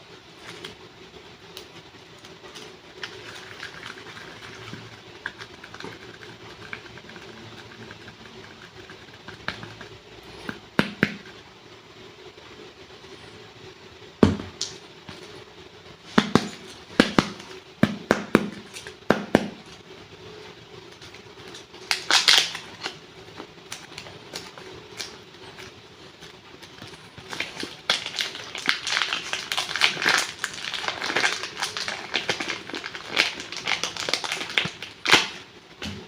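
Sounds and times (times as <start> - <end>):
steady low hum: 0.0 - 36.0
packaging crackling and clicking: 21.4 - 23.0, 26.6 - 35.4.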